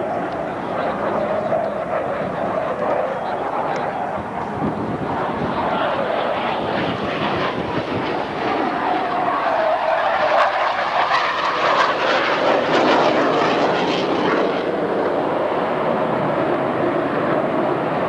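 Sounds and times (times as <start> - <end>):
jet engines flying past: 0.0 - 18.0.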